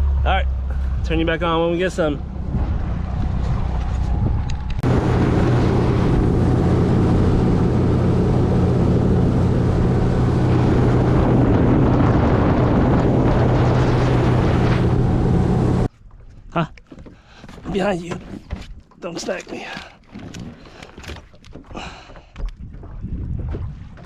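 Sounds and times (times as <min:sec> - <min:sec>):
outboard motor running: 0:02.0 - 0:16.2
wind on microphone: 0:02.2 - 0:15.9, 0:22.4 - 0:24.0
water rushing: 0:04.5 - 0:15.9.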